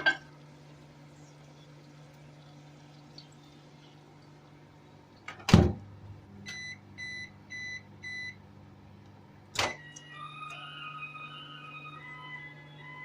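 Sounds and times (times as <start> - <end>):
low microwave hum: 0.0 - 13.0
microwave clunk: 5.3 - 5.8
short microwave beeps: 6.4 - 8.4.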